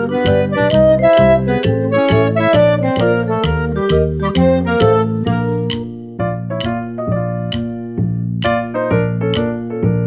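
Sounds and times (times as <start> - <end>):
keyboard melody over a beat: 0.0 - 10.0.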